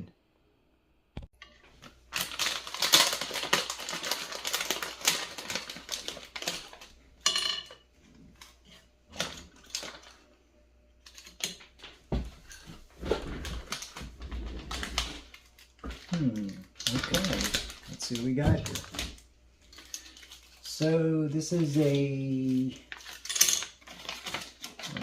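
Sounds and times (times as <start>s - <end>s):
packaging crinkling: 1.7s - 7.0s, 9.2s - 10.2s, 12.5s - 25.0s.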